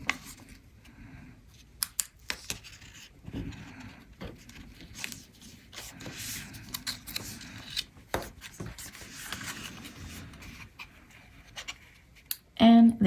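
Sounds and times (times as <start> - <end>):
paper rustling and rubbing: 2.3 - 12.2.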